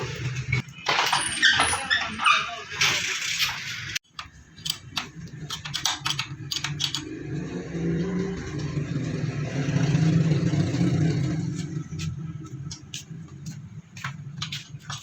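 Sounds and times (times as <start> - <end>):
sharp clicks and knocks: 4.1 - 7.2.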